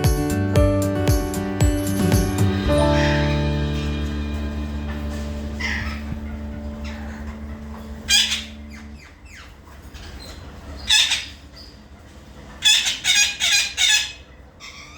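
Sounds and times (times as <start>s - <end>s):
parrots squawking: 2.7s - 3.5s, 5.1s - 14.9s.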